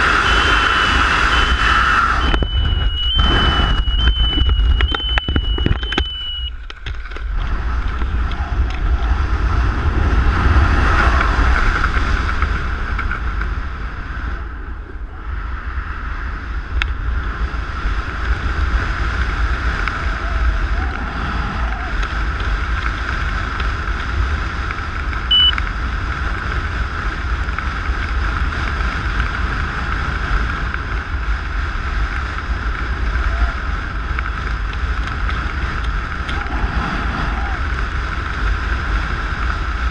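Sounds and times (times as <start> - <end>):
deep buffeting rumble: 0.0 - 39.9
wind rushing over microphone: 0.0 - 39.9
short high beep: 0.2 - 6.6, 25.3 - 25.6.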